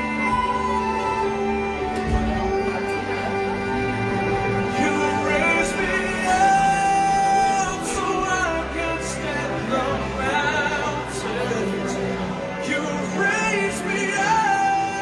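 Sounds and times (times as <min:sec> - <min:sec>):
sustained instrumental accompaniment: 0:00.0 - 0:15.0
solo voice singing with vibrato: 0:04.7 - 0:15.0.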